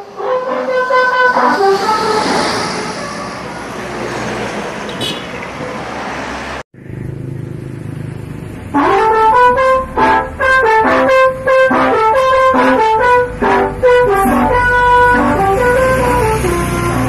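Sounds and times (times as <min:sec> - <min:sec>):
multi-tone bus horn melody: 0:00.0 - 0:03.9, 0:04.9 - 0:05.3, 0:08.7 - 0:17.0
bus driving past: 0:00.0 - 0:17.0
low engine rumble: 0:06.8 - 0:17.0.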